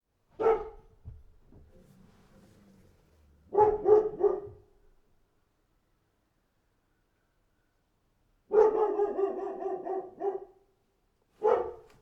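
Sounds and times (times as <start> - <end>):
dog barking: 0.4 - 1.0, 3.5 - 4.7, 8.5 - 10.6, 11.4 - 12.0.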